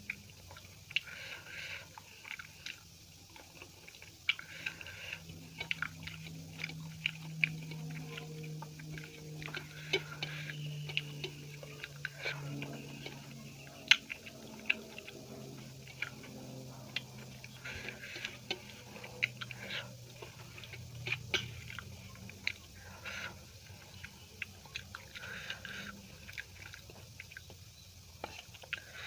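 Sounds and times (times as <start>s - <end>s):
person chewing food: 0.0s - 29.0s
wet mouth clicks and smacks: 1.9s - 23.3s.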